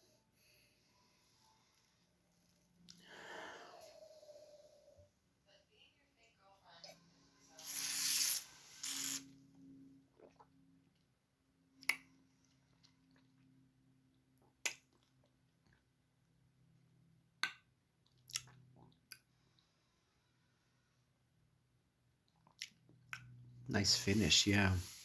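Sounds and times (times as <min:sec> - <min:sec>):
lip smacks and tongue clicks: 0:11.8 - 0:13.4, 0:14.4 - 0:15.8, 0:17.4 - 0:19.3.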